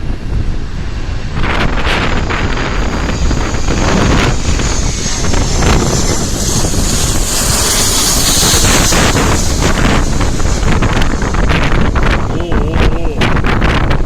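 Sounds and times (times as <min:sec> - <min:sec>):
strong wind buffeting microphone: 0:00.0 - 0:14.0
high hiss: 0:02.4 - 0:13.2.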